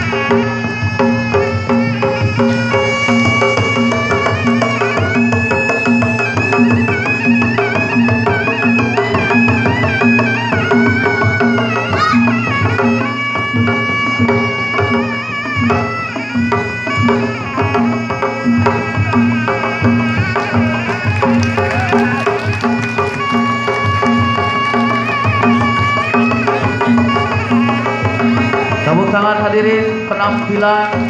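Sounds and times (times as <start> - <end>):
hand drums: 0.0 - 29.6
wavering reed melody: 16.9 - 31.0.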